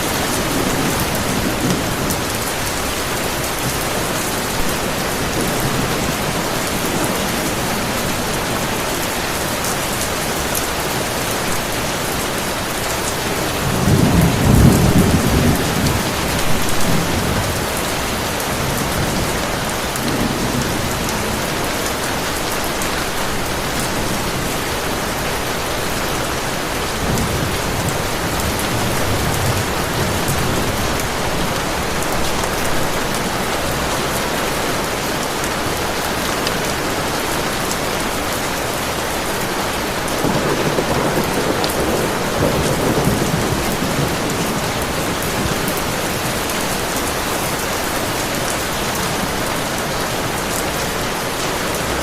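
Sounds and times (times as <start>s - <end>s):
heavy rain falling: 0.0s - 52.0s
low rumble of thunder: 13.5s - 22.3s, 39.8s - 47.2s.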